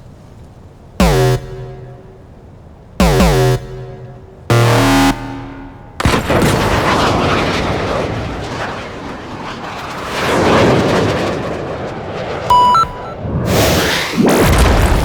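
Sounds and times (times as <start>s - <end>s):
short electronic beeps: 1.0s - 2.3s, 3.0s - 6.2s, 12.5s - 13.2s
jet-like drone roar: 1.0s - 2.4s, 3.0s - 14.5s.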